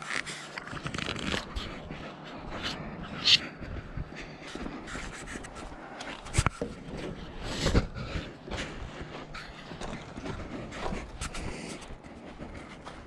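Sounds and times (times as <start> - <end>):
camera handling rustle: 0.0 - 1.8, 4.9 - 8.0.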